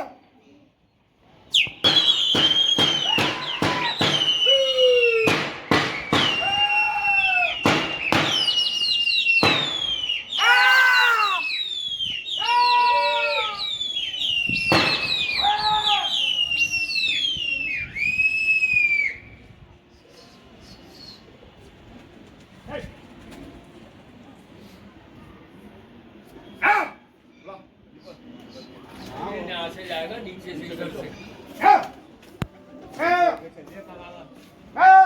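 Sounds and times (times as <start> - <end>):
lower whistled notes: 1.5 - 10.6, 11.2 - 19.5
shrill whistling: 1.5 - 19.4
sharp cracks: 1.6 - 4.5, 5.2 - 6.6, 7.5 - 10.1.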